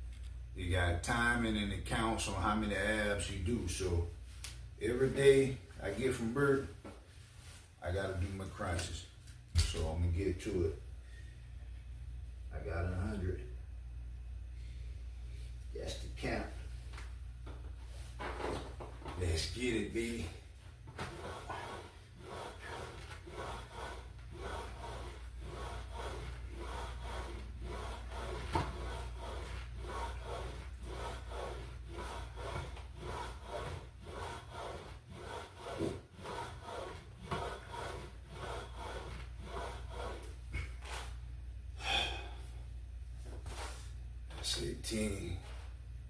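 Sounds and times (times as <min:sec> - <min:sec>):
heavy breathing: 0:41.8 - 0:42.7.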